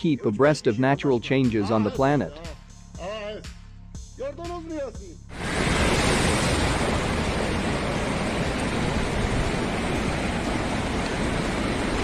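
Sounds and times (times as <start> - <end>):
floodwater rushing: 5.3 - 12.0.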